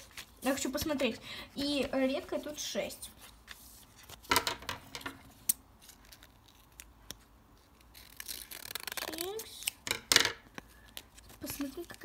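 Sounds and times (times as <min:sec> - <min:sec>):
paper rustling: 0:00.0 - 0:04.4.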